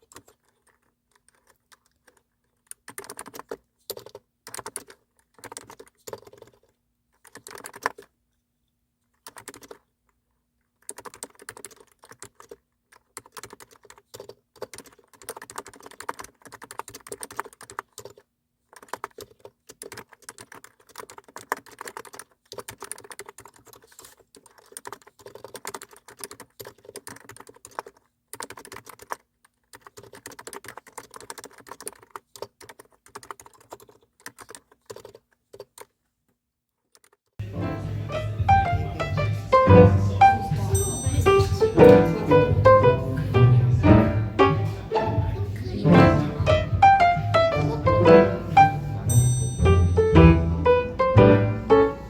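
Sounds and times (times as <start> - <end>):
computer keyboard typing: 0.0 - 8.1, 9.1 - 9.9, 10.8 - 36.0, 36.9 - 37.3, 38.5 - 44.8.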